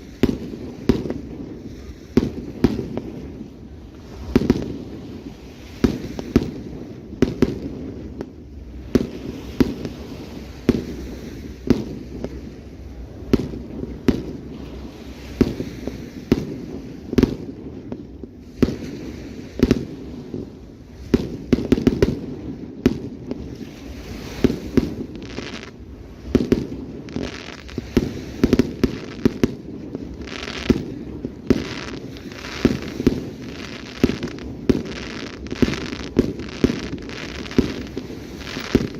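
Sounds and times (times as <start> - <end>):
firework crackling: 0.0 - 38.9
firework shells bursting: 26.3 - 38.9.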